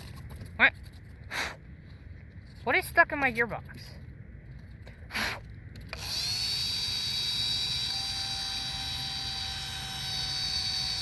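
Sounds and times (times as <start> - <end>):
electric motor and propeller whine: 5.7 - 11.0.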